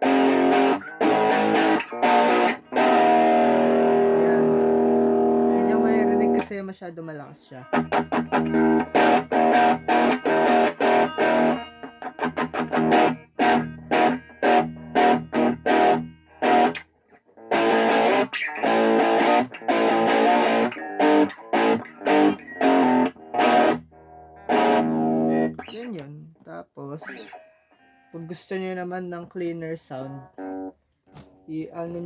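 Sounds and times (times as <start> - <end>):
overdriven electric guitar chords: 0.0 - 6.5, 7.6 - 26.2, 30.3 - 30.8.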